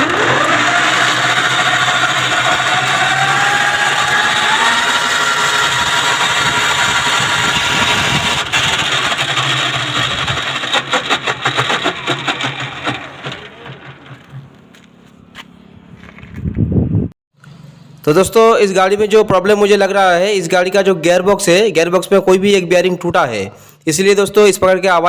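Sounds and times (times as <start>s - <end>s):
rattling clatter: 0.0s - 15.0s
gearbox whining and grinding: 0.0s - 16.6s.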